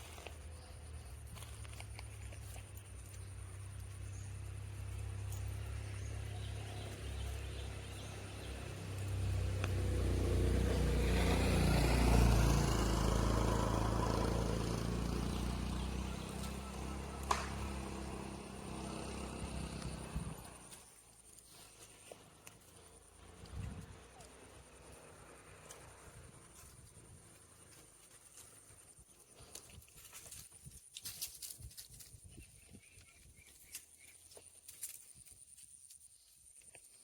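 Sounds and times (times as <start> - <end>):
motor vehicle passing: 0.0 - 29.6.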